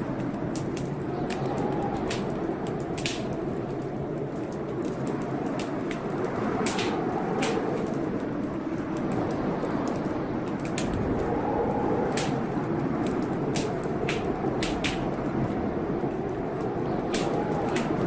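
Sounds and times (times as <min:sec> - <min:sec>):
wood fire crackling and popping: 0:00.0 - 0:18.0.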